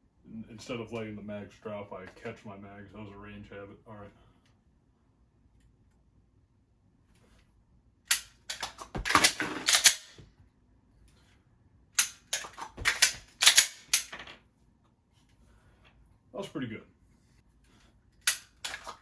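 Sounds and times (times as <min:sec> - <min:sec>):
pistol clicks and clacks: 0:08.1 - 0:10.2, 0:12.0 - 0:14.2, 0:18.2 - 0:19.0.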